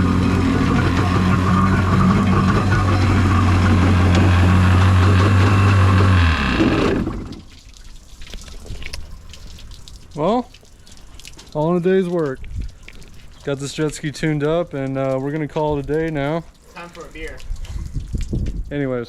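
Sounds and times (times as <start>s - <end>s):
jet ski engine idling: 0.0s - 7.4s.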